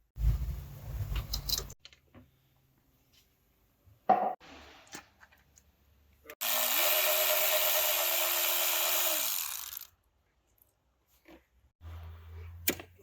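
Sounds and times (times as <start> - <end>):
power tool spinning: 6.4 - 9.9.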